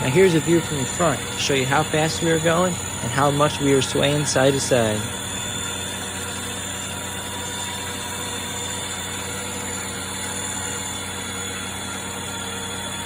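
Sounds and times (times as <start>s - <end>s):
treadmill whirring: 0.0s - 13.0s.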